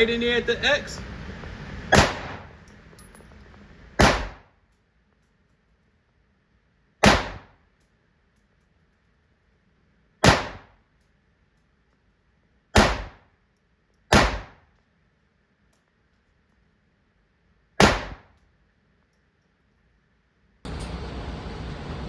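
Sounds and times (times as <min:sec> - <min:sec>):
gunshots: 0:01.9 - 0:02.6, 0:04.0 - 0:04.5, 0:07.0 - 0:07.6, 0:10.2 - 0:10.8, 0:12.8 - 0:13.3, 0:14.1 - 0:14.7, 0:17.8 - 0:18.3.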